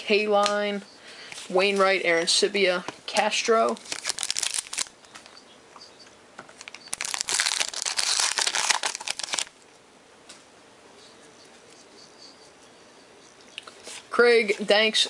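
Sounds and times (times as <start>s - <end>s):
card pack wrapper crinkling and tearing: 3.6s - 5.0s, 6.6s - 9.6s.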